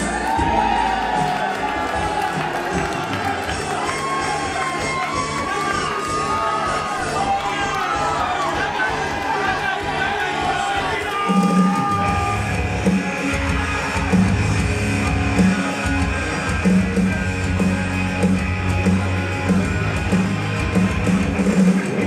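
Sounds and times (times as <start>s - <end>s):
driving bass beat: 0.0s - 22.0s
rock music with guitar: 11.6s - 22.0s.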